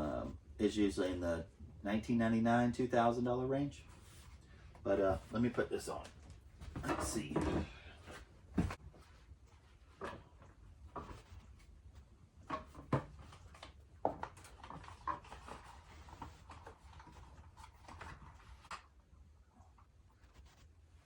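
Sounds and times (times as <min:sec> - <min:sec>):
faint handling noise: 0:03.8 - 0:19.1.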